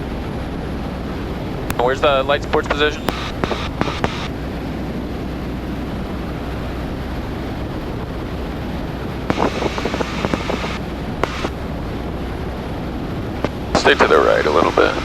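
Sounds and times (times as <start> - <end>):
aircraft engine and propeller drone: 0.0 - 15.0
crackling clicks: 1.7 - 4.3, 9.2 - 11.6, 13.4 - 14.9.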